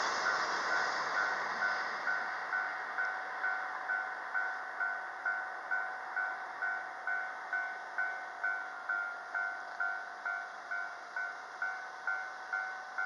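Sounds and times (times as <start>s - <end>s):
electronic crossing bell ringing: 0.0s - 13.0s
passing train rushing: 0.0s - 13.0s.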